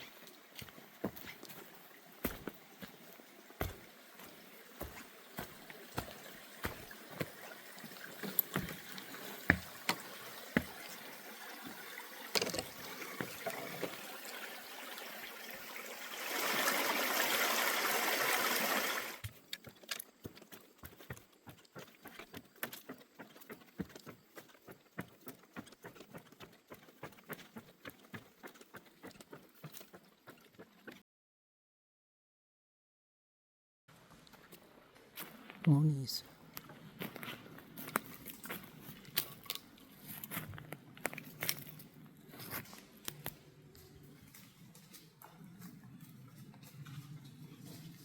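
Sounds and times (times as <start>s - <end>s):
footsteps on a trail: 0.0s - 11.0s, 19.2s - 31.0s, 34.0s - 48.0s.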